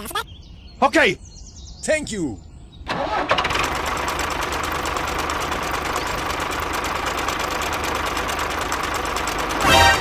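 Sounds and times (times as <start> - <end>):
small engine idling: 2.9 - 10.0.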